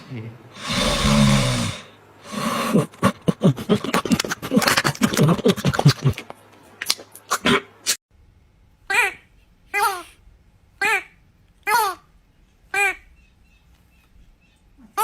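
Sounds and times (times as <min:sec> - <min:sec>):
loud breathy sound: 0:00.0 - 0:03.0.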